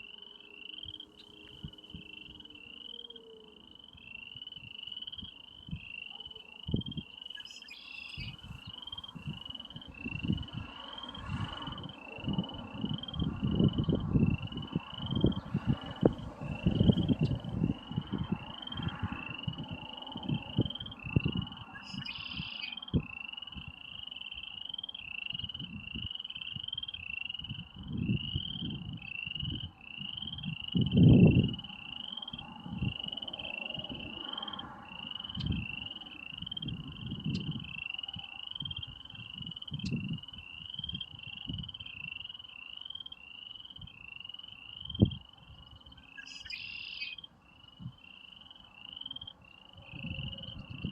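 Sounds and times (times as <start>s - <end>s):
bird call: 0.0s - 9.1s, 21.6s - 23.3s, 45.5s - 49.3s
frogs calling in chorus: 0.0s - 50.9s
wind rumbling on microphone: 0.0s - 50.9s.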